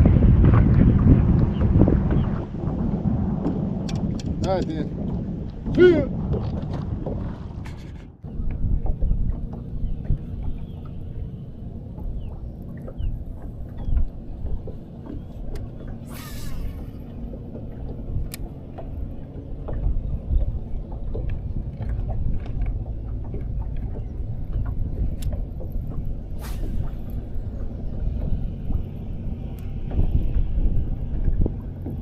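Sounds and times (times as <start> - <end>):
boat motor rumbling: 0.0 - 32.0
brief hisses: 16.1 - 17.0.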